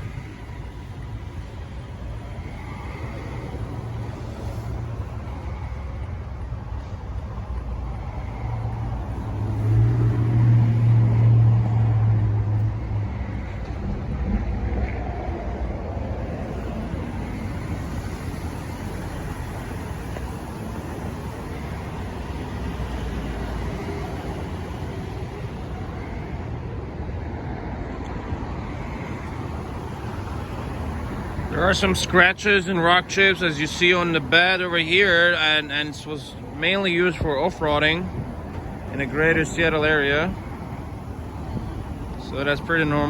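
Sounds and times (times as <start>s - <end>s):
vehicle engine rumble: 0.0s - 43.0s
low rumble: 6.9s - 18.2s.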